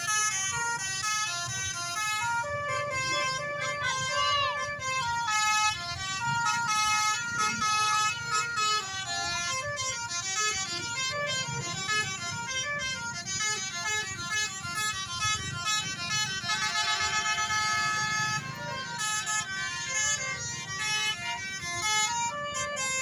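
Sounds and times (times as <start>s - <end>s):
multi-tone musical bus horn: 0.0s - 23.0s.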